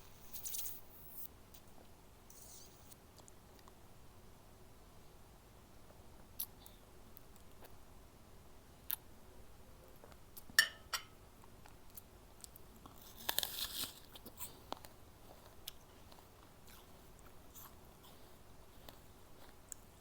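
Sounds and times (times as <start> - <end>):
crunchy chewing: 11.6 - 20.0
biting into an apple: 12.8 - 18.2.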